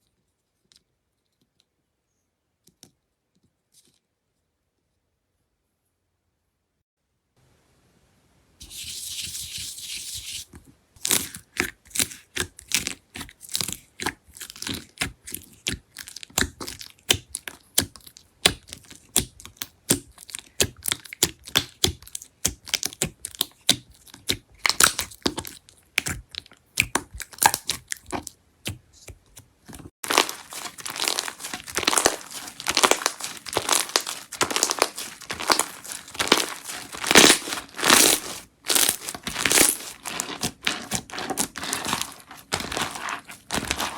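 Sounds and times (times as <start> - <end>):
slime crackling and popping: 15.7 - 28.2, 30.0 - 43.9.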